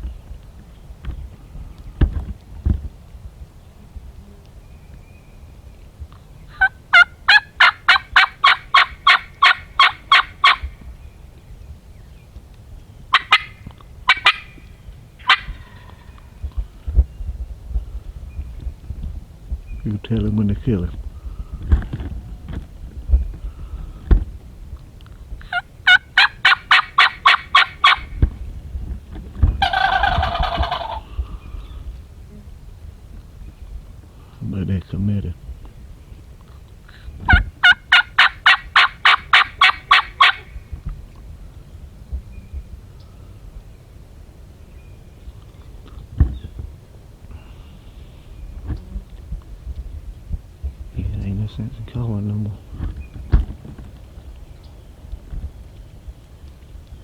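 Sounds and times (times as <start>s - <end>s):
turkey gobbling: 6.5s - 10.8s, 13.1s - 16.4s, 25.4s - 28.4s, 29.4s - 31.8s, 36.9s - 40.6s
turkey yelping: 6.5s - 10.8s, 13.1s - 16.4s, 25.4s - 28.3s, 29.6s - 31.3s, 36.9s - 40.6s.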